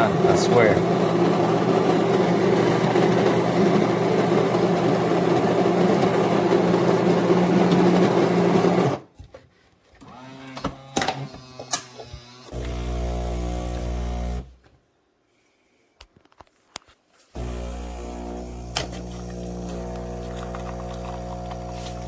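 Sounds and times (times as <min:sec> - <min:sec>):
espresso machine buzzing: 0:00.0 - 0:09.0, 0:12.2 - 0:14.5, 0:17.4 - 0:22.0.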